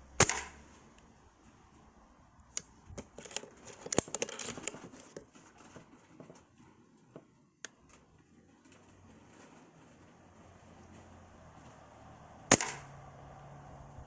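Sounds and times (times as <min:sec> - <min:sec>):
air rifle shot: 0:00.2 - 0:00.8, 0:12.5 - 0:13.0
small clicks and knocks: 0:02.5 - 0:11.8.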